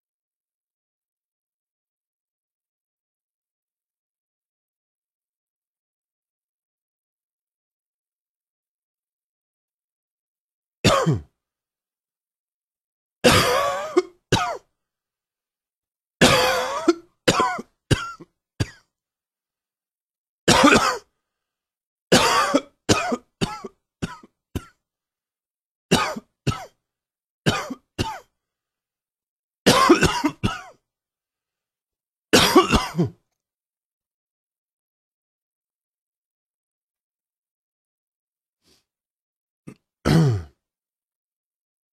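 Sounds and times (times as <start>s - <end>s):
person coughing: 10.9s - 11.3s, 13.2s - 14.6s, 16.2s - 18.8s, 20.5s - 21.1s, 22.1s - 24.8s, 25.9s - 26.8s, 27.5s - 28.3s, 29.7s - 30.8s, 32.3s - 33.2s, 39.7s - 40.6s.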